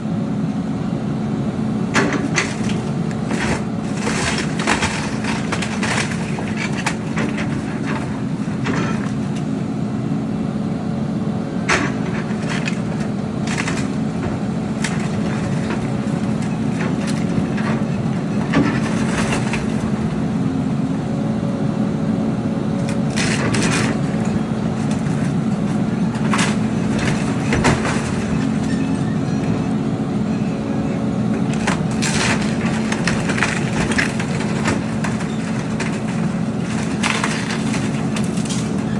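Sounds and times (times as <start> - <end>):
diesel engine running: 0.0 - 38.9
sharp cracks and knocks: 1.9 - 9.5, 11.7 - 20.0, 22.8 - 28.9, 31.4 - 38.9.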